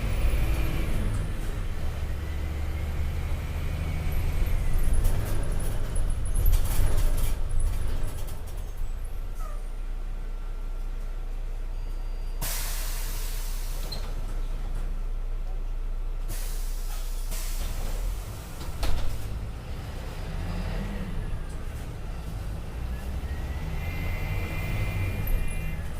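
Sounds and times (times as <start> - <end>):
diesel bus engine idling: 0.0 - 20.2, 20.8 - 25.9
air brake hiss: 12.4 - 14.2, 16.3 - 17.9.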